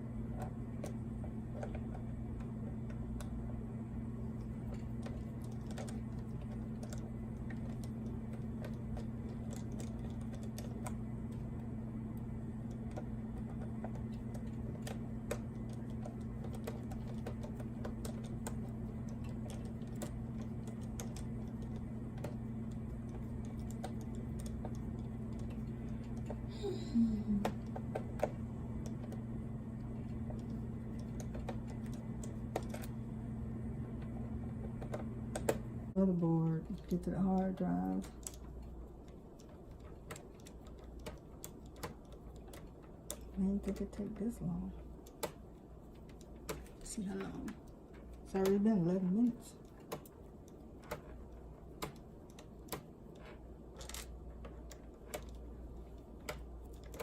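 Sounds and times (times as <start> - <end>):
low hum: 0.0 - 57.0
screwdriver clicking on plastic: 4.4 - 11.5, 12.6 - 26.4.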